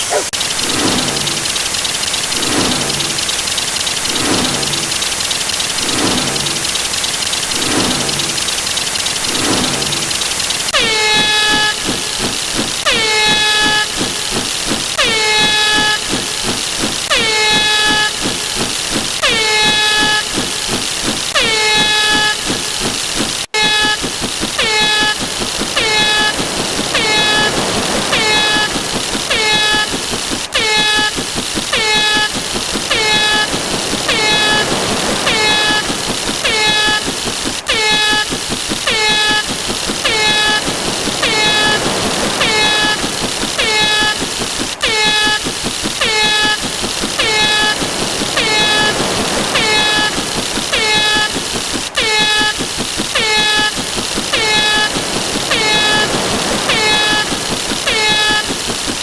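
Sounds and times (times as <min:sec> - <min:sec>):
honking sound effect: 0:23.5 - 0:51.4, 0:52.0 - 0:58.6.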